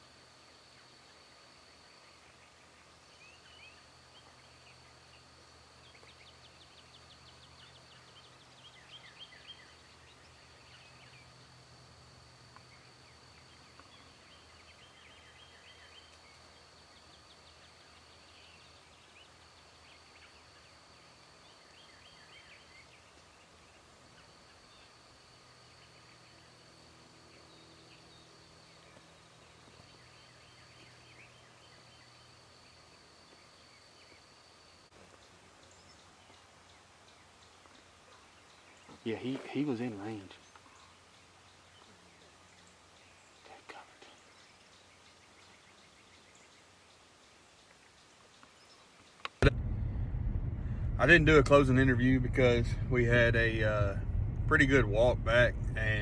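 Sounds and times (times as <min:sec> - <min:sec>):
bird calls: 0:35.0 - 0:49.4
faint low hum: 0:49.4 - 0:56.0.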